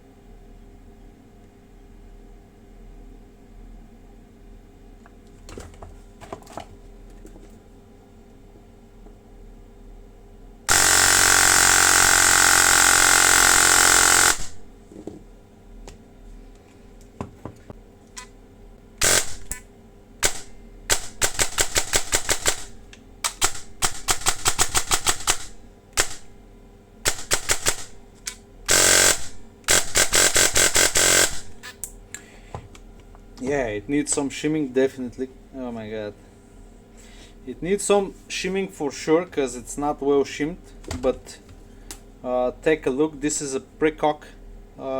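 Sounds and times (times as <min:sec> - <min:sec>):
airsoft gun firing bursts: 0:10.7 - 0:14.6, 0:19.0 - 0:19.6, 0:20.2 - 0:26.3, 0:27.1 - 0:28.0, 0:28.7 - 0:31.6.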